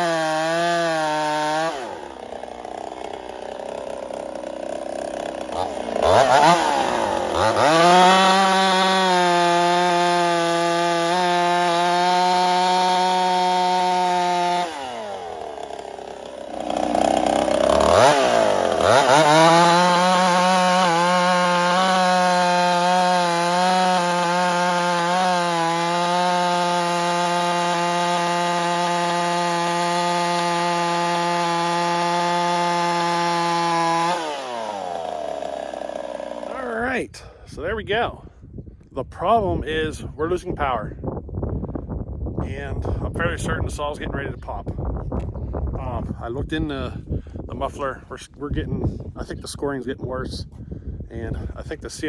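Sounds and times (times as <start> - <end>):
chainsaw running at high revs: 0.0 - 36.9.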